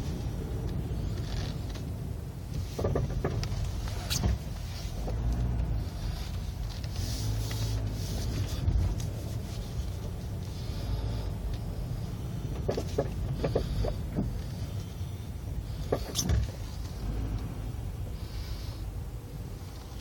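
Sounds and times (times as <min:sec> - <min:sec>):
car low rumble: 0:00.0 - 0:20.0
sharp clicks from car: 0:00.6 - 0:09.4, 0:12.3 - 0:15.0, 0:15.7 - 0:17.5.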